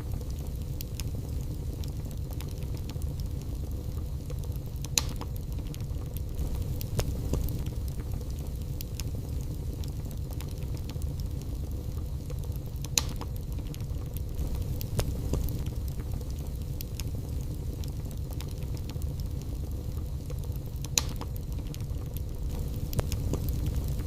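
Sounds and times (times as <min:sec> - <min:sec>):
loud fire pops: 0:00.0 - 0:24.0
small fire crackles: 0:00.0 - 0:24.0
wood fire rumbling: 0:00.0 - 0:24.0.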